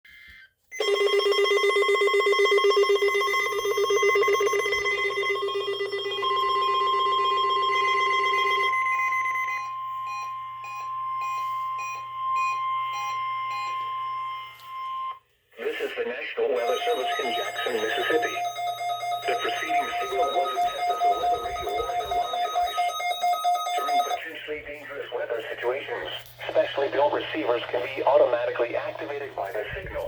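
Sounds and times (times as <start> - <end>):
steady warning alarm tone: 0.1 - 15.3, 16.6 - 24.2
fast-pulsing ringing alarm: 0.7 - 15.2, 16.6 - 24.2
short beeps: 7.6 - 15.2, 16.6 - 24.2.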